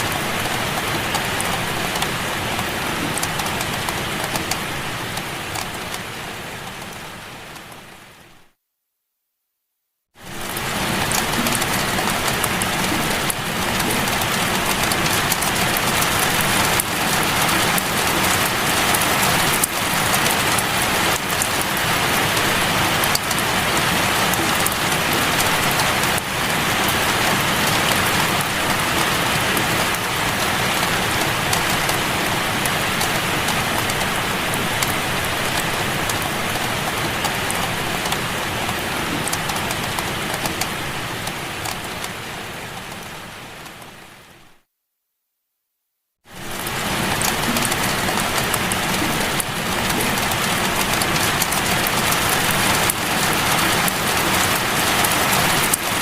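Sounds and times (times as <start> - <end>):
faint raindrop ticks: 0.0 - 8.0, 10.2 - 44.0, 46.4 - 56.0
rain hissing: 10.2 - 44.3, 46.3 - 56.0.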